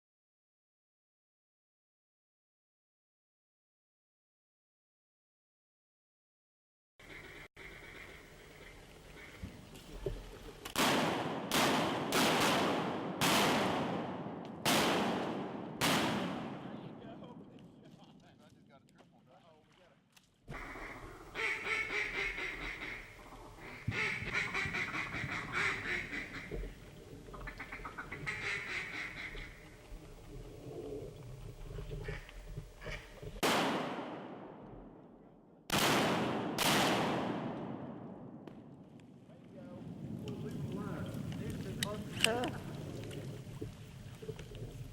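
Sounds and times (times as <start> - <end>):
shotgun shots echoing: 10.7 - 17.6, 33.4 - 35.1, 35.7 - 38.8.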